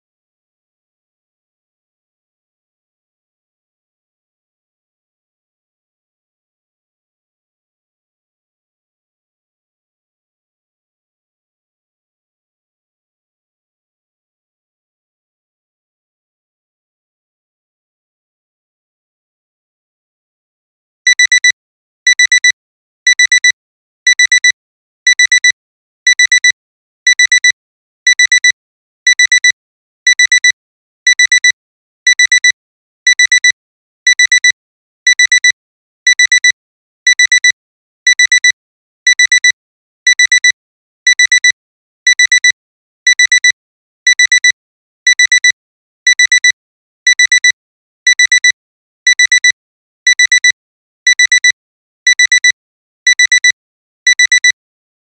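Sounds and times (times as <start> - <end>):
alarm clock beeping: 54.2 - 54.6.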